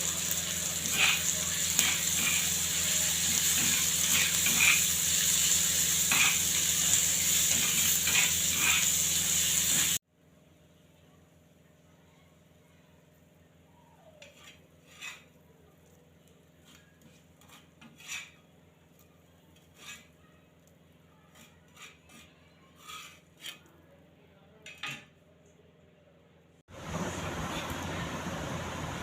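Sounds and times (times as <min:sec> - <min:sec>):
utensils clinking against dishes: 0:00.1 - 0:05.2, 0:05.9 - 0:10.0.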